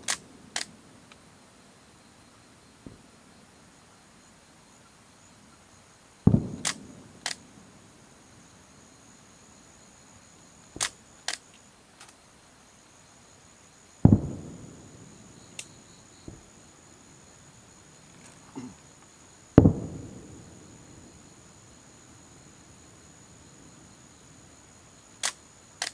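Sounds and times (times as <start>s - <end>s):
firework booms echoing: 6.2s - 7.7s, 14.0s - 17.9s, 19.5s - 24.6s
firework cracks: 6.3s - 7.6s, 10.7s - 12.2s, 14.0s - 18.7s, 19.5s - 25.9s.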